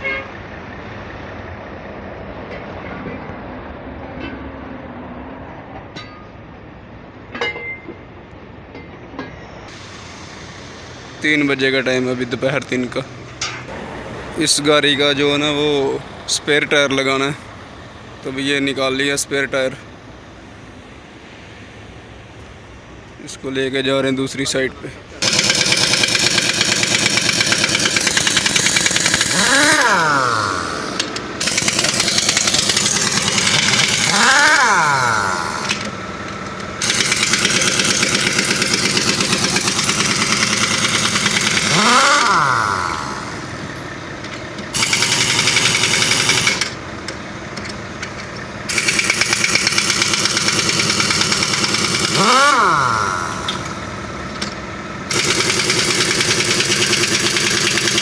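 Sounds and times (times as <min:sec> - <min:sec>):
impact wrench rattling: 0:25.2 - 0:58.0.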